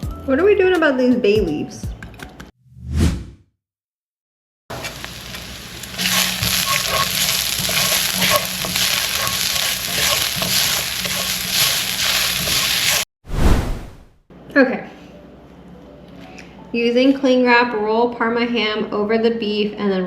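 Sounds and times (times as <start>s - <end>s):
beef sizzling in a hot pan: 4.7s - 13.1s.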